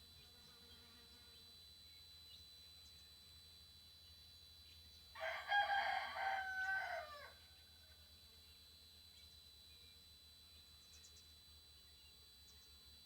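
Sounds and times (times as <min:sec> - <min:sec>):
faint high-pitched electronic whine: 0:00.0 - 0:13.0
rooster crowing: 0:05.2 - 0:07.8.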